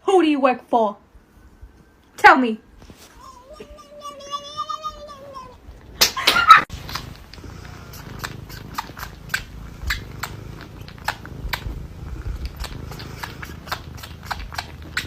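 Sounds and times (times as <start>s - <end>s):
cat chewing crunchy food: 6.7s - 15.0s
low steady rumble: 6.7s - 15.0s.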